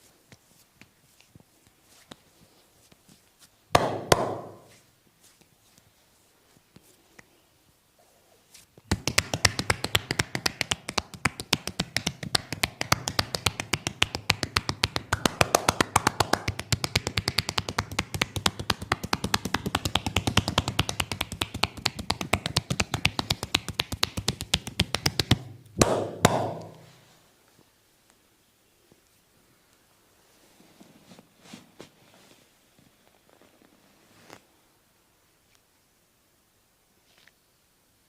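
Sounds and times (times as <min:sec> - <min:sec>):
hands tapping on body: 0:03.7 - 0:04.8, 0:08.9 - 0:26.9
loud slaps: 0:03.8 - 0:04.7, 0:08.9 - 0:26.9.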